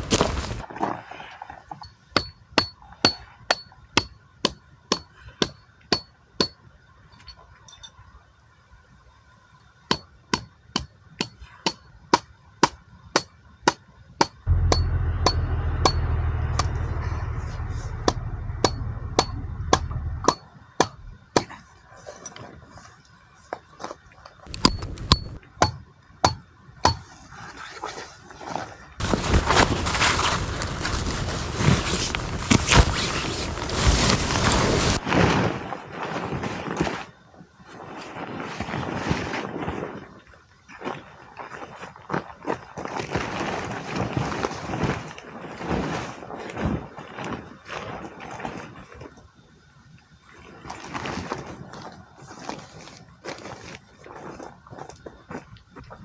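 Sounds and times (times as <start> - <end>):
low rumble: 14.5 - 21.2, 24.5 - 25.4, 29.0 - 35.0
hammer striking metal tent pegs: 24.5 - 27.0.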